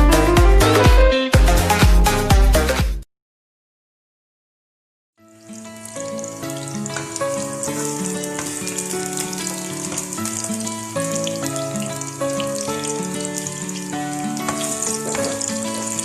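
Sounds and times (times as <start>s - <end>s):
background music: 0.0s - 3.0s, 5.2s - 16.0s
food sizzling in hot oil: 5.3s - 16.0s.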